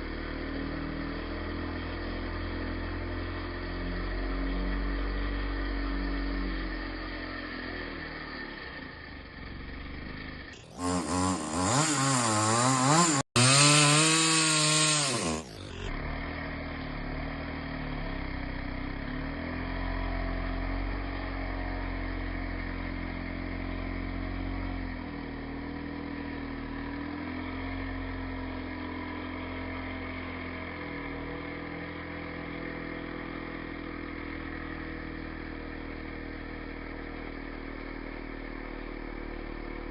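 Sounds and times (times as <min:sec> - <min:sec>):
chainsaw revving and cutting: 0:00.0 - 0:39.9.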